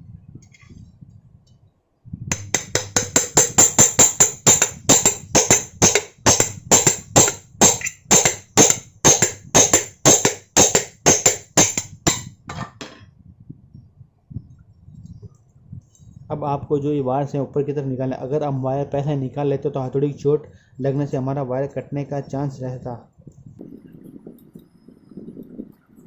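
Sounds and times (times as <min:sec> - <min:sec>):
hammer tapping on metal shaft: 0:02.3 - 0:13.0.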